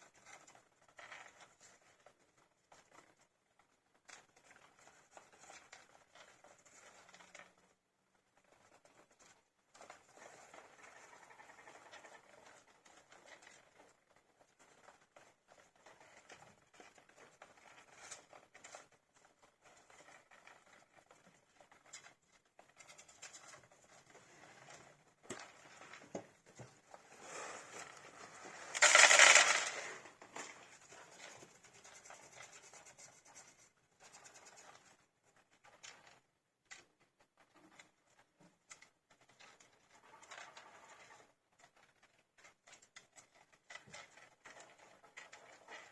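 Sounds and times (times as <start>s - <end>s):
hamsters scratching in bedding: 4.1s - 36.2s.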